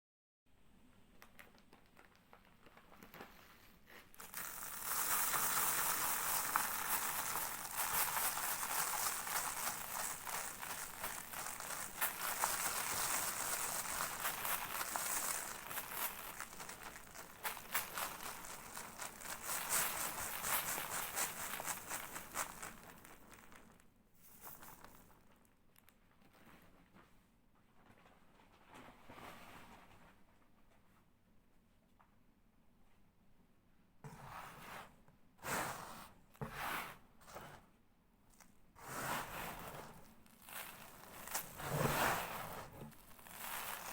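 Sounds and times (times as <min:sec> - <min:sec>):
sand crumbling on cardboard: 0:04.1 - 0:25.1, 0:38.8 - 0:43.9.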